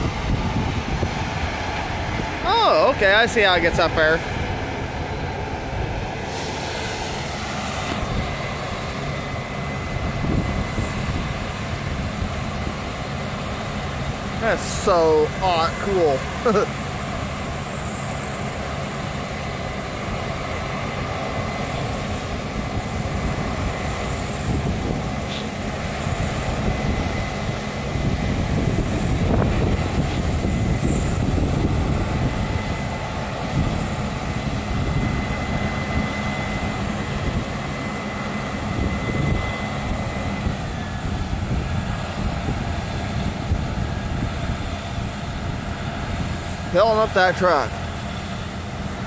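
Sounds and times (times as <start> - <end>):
wind noise on microphone: 0.0 - 2.6, 6.3 - 14.3, 21.8 - 36.2, 38.6 - 46.6
combine harvester engine drone: 0.0 - 49.0
high whine: 0.0 - 49.0.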